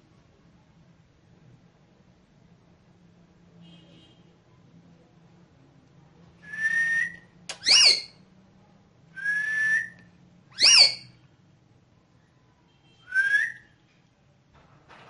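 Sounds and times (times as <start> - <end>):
parrot whistling: 6.5 - 8.2, 9.2 - 11.2.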